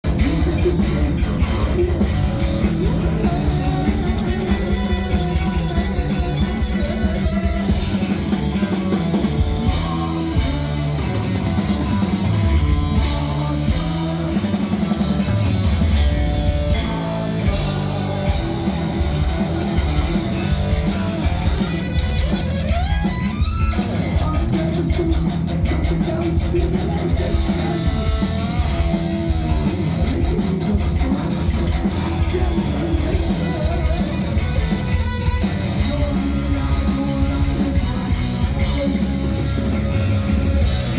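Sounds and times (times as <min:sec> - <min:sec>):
heavy metal band playing: 0:00.0 - 0:40.9
person singing: 0:00.0 - 0:40.9.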